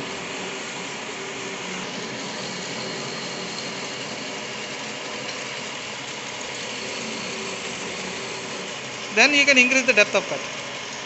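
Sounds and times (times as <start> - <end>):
lathe running: 0.0 - 11.0.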